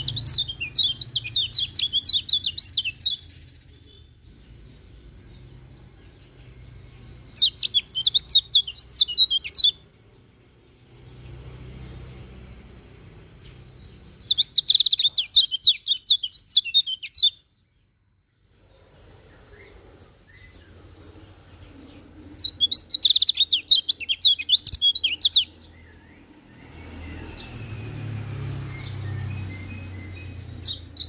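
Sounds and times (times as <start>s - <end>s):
bird twittering: 0.0s - 4.2s, 7.3s - 9.9s, 13.4s - 17.5s, 22.4s - 27.8s, 28.4s - 31.0s.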